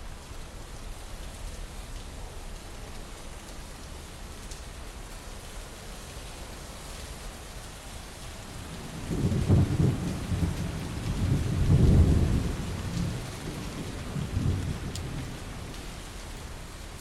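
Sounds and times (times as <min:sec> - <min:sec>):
rain hissing: 0:00.1 - 0:17.0
rolling thunder: 0:08.6 - 0:15.8.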